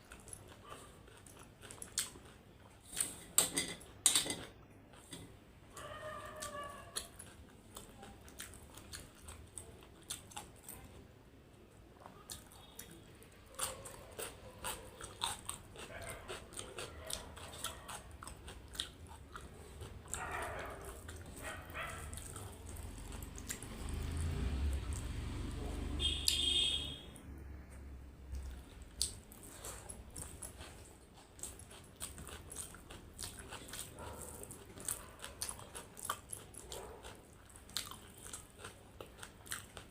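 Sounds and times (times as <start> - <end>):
person chewing and biting food: 12.3 - 25.3, 28.3 - 39.9.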